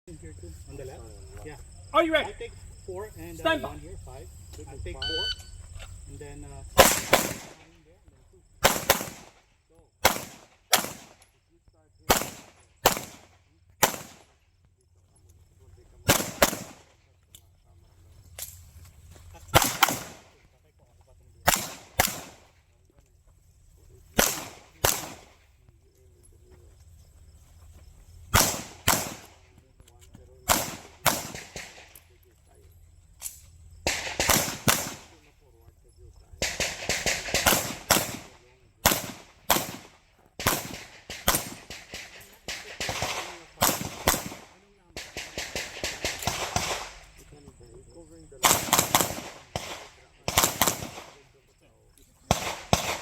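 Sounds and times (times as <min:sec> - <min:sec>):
pistol shots with echo: 0:06.8 - 0:07.7, 0:08.6 - 0:11.3, 0:12.0 - 0:14.4, 0:16.0 - 0:17.0, 0:19.5 - 0:20.3, 0:21.4 - 0:22.5, 0:24.2 - 0:25.4, 0:28.3 - 0:29.4, 0:30.4 - 0:32.0, 0:33.8 - 0:35.2, 0:36.4 - 0:47.1, 0:48.4 - 0:51.2, 0:52.3 - 0:53.0.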